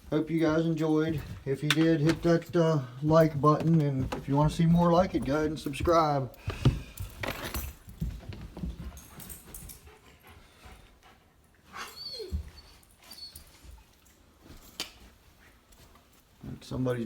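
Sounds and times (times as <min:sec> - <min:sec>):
dog whimpering: 0:11.7 - 0:13.6.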